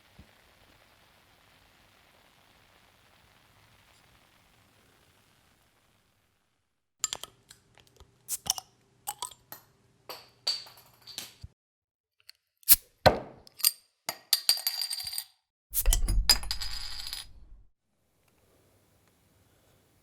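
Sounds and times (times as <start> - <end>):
bottle opener clinking on glass: 8.3 - 11.4, 15.8 - 17.6.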